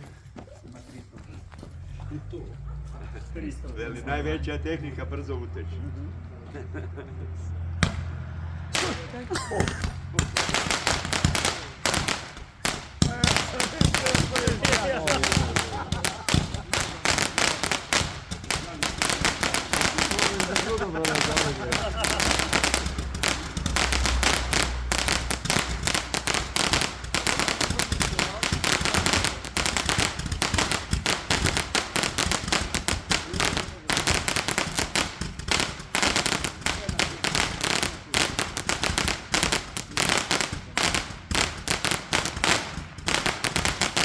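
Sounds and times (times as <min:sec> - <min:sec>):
firecracker string of bangs: 0:07.8 - 0:44.0
low rumble: 0:15.3 - 0:28.4.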